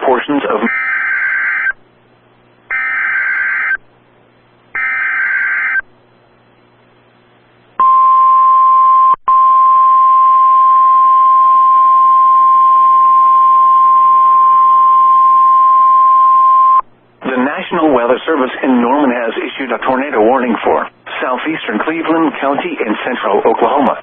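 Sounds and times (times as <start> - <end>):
steady warning alarm tone: 0.7 - 1.8, 2.7 - 3.8, 4.8 - 5.9.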